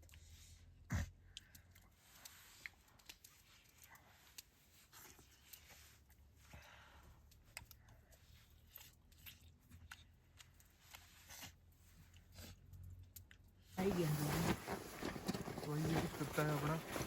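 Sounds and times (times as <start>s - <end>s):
faint rustling: 13.8s - 17.0s.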